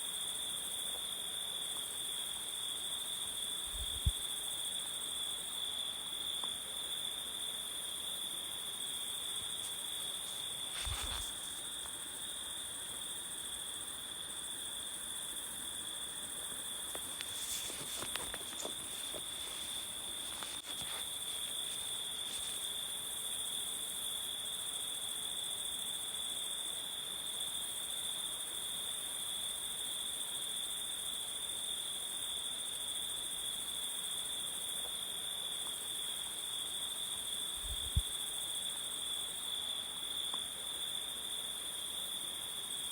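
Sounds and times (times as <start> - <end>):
insect chorus drone: 0.0 - 42.9.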